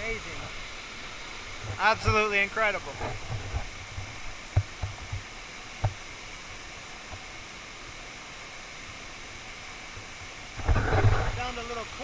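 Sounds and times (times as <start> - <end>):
waterfall rushing hiss: 0.0 - 12.0
low thumps on microphone: 2.9 - 6.0, 10.6 - 11.4.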